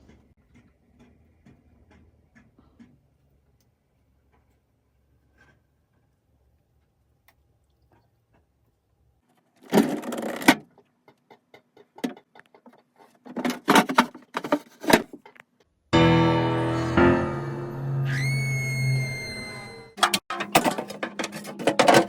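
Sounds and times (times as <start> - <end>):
knocking and rattling objects: 9.6 - 15.4, 20.0 - 22.0
background music with held notes: 16.0 - 18.1.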